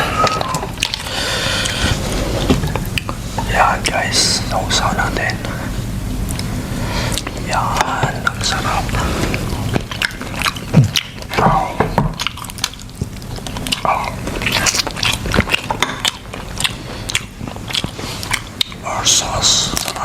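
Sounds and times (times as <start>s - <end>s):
chewing seafood: 0.0s - 20.0s
wet mouth clicks and smacks: 12.1s - 18.8s.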